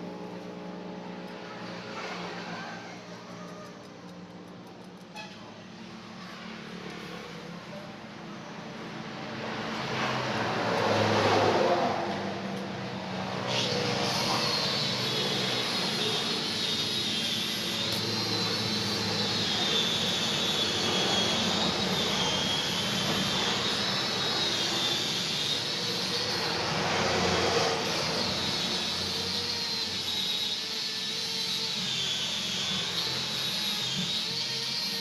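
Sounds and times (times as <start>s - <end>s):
angle grinder whining on steel: 9.8s - 35.0s.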